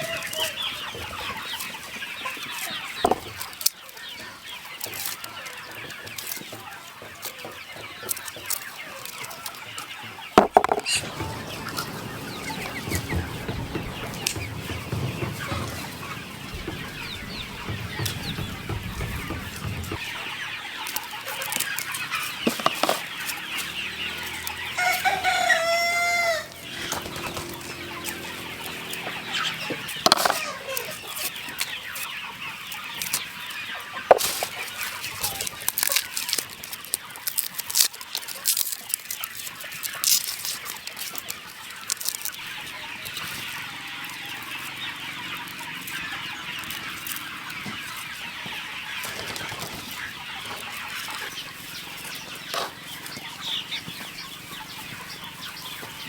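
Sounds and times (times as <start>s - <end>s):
rooster crowing: 0.0s - 0.6s, 10.9s - 19.9s, 24.3s - 30.8s
chickens clucking: 0.0s - 56.0s
sharp knocks: 10.4s - 20.4s.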